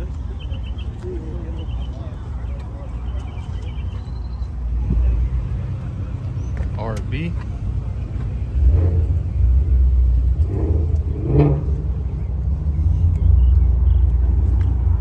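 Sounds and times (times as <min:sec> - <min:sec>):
faint voices: 0:00.0 - 0:10.3
car engine running: 0:02.4 - 0:15.0.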